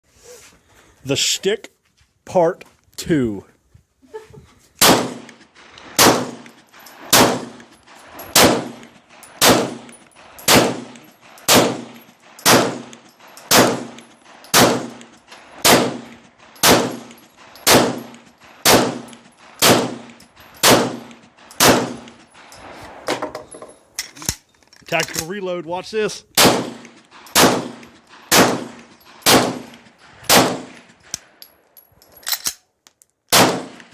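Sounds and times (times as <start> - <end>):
pistol shots with ringing: 4.8 - 22.6, 26.4 - 30.9, 33.3 - 33.9.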